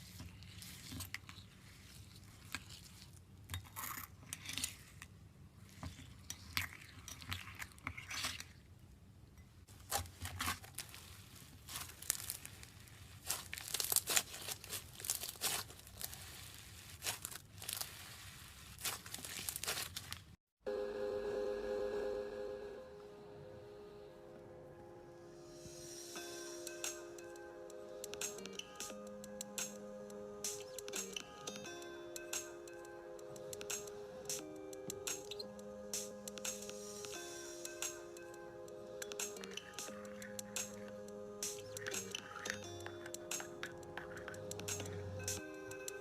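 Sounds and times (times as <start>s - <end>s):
slime squishing with crackling pops: 9.8s - 20.4s
music: 20.7s - 46.0s.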